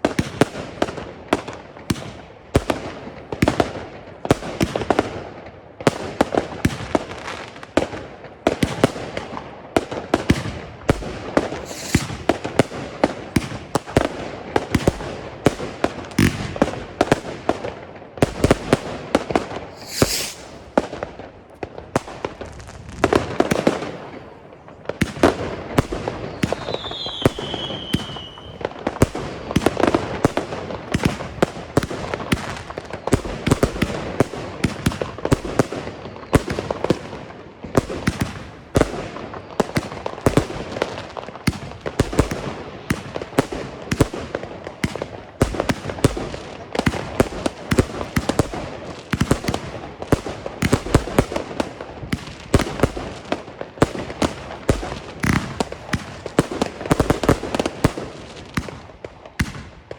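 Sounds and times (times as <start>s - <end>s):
firework aerial bursts: 11.5s - 12.5s, 19.4s - 21.0s, 54.0s - 57.7s
falling firework whistle: 11.6s - 12.4s, 19.7s - 20.8s, 26.3s - 28.7s
firework launch shots: 11.6s - 12.6s, 18.7s - 21.0s, 54.2s - 56.4s.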